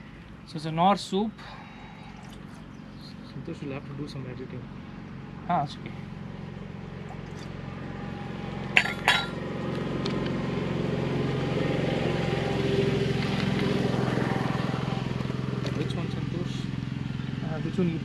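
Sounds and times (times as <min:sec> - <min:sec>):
vehicle engine hum: 0:00.0 - 0:18.0
camping cookware clinks: 0:08.8 - 0:09.4.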